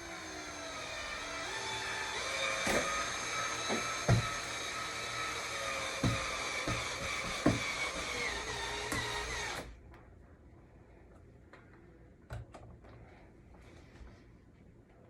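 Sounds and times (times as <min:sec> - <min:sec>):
cordless drill motor whining: 0:00.0 - 0:09.7.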